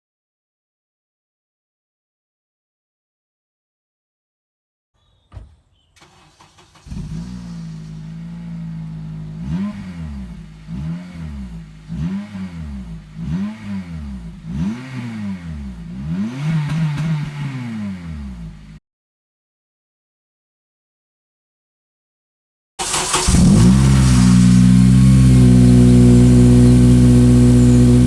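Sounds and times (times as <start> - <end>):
car engine idling and revving: 6.0 - 18.8, 22.8 - 28.0.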